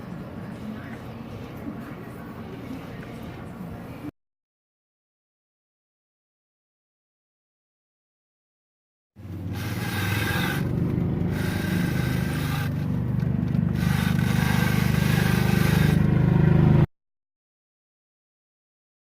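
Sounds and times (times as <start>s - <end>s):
utility vehicle engine running: 9.2s - 16.9s
drive belt squealing scrape: 9.5s - 13.1s, 13.7s - 16.1s.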